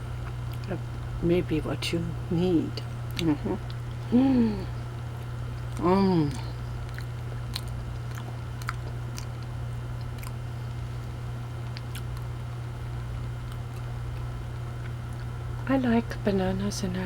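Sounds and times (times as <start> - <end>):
low electrical hum: 0.0 - 17.0
person chewing: 3.1 - 15.6.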